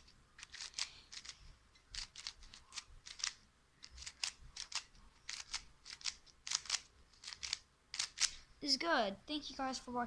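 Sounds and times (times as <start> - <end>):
speed cube clicking: 0.4 - 8.4.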